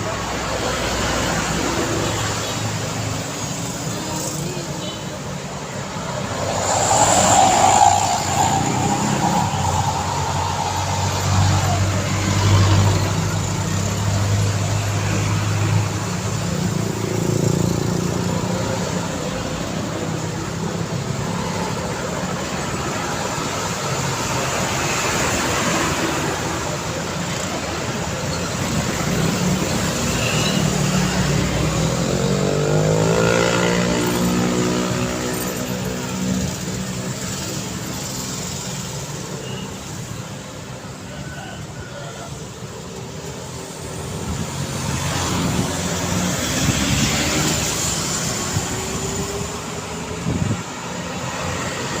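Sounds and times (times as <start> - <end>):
cars and trucks passing: 0.0 - 52.0
loud vehicle passing: 5.4 - 16.0
engine speeding up: 5.7 - 13.5.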